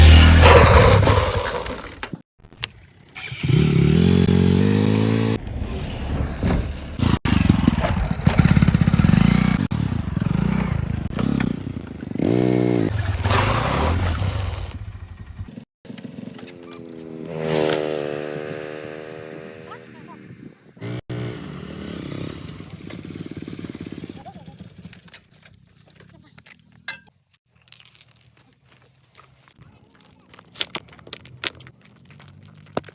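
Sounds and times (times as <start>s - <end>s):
vehicle engine revving: 0.0s - 2.2s, 3.2s - 24.0s.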